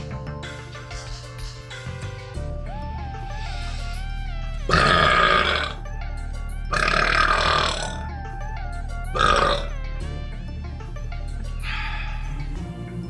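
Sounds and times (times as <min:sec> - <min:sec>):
background music: 0:00.0 - 0:13.0
person belching loudly: 0:04.7 - 0:05.8, 0:06.7 - 0:08.1, 0:09.1 - 0:09.7.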